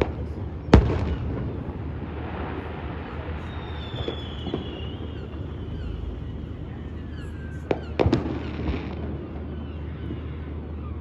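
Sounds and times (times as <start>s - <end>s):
faint firework pops: 0.0s - 6.2s, 7.6s - 10.2s
high whistle falling in pitch: 3.4s - 6.1s.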